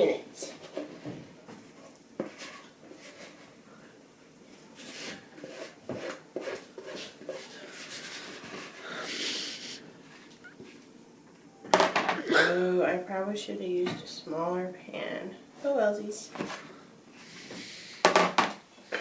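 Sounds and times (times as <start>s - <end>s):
batter scraping: 4.8s - 8.9s.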